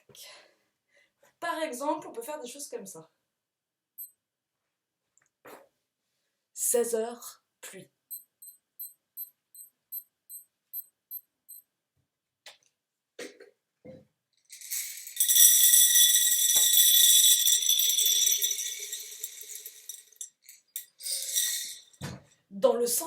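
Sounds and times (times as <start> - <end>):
watch beeping: 8.1 - 11.6
jingling rattle of shaken objects: 14.5 - 22.2.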